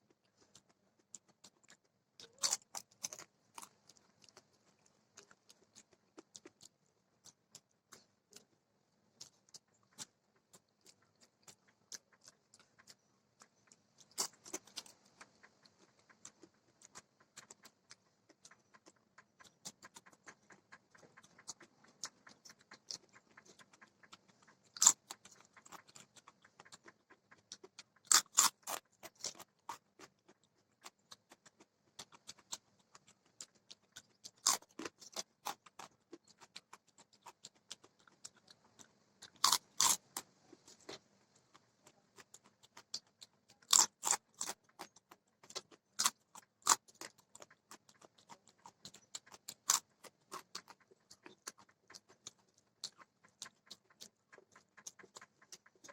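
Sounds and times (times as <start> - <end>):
person chewing food: 0.0 - 55.9
loud crunch: 28.1 - 29.8, 39.4 - 40.0.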